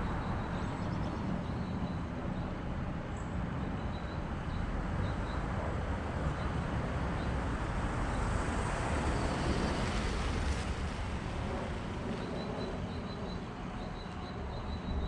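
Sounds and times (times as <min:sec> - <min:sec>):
traffic rumble: 0:04.3 - 0:15.0
vehicle passing by: 0:07.6 - 0:12.3.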